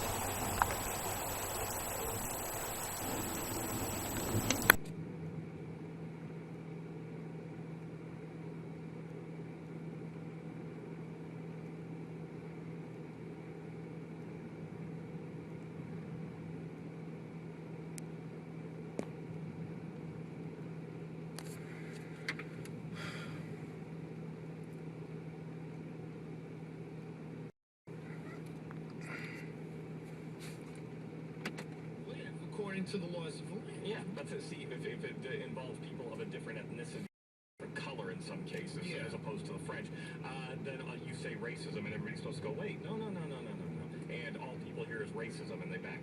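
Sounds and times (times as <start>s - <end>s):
faint hiss: 0.0s - 4.8s
faint clicks: 0.0s - 4.9s
steady low hum: 0.0s - 4.9s.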